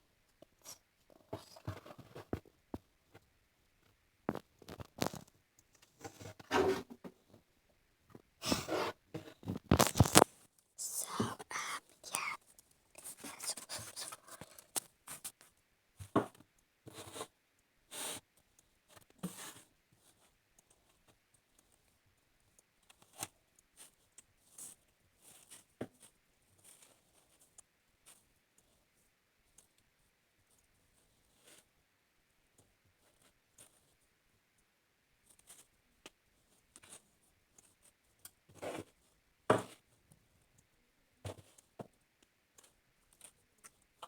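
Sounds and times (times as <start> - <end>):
slime crackling and rustling: 9.6 - 10.3.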